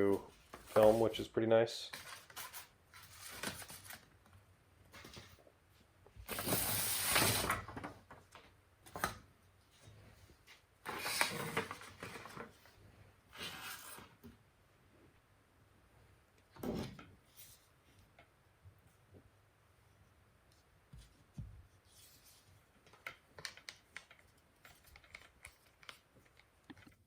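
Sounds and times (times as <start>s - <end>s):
packaging rustling and scraping: 1.9s - 4.1s, 6.3s - 7.9s, 10.4s - 14.2s.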